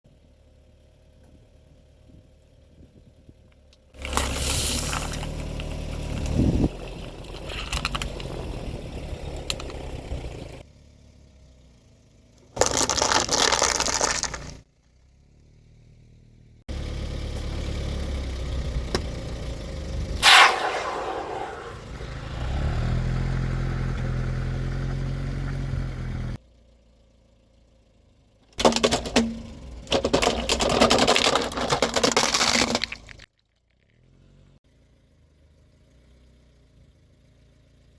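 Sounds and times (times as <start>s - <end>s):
car engine running: 0.1s - 37.9s
tyres crushing objects: 12.6s - 14.6s, 28.6s - 33.8s
sharp crack: 20.2s - 22.8s.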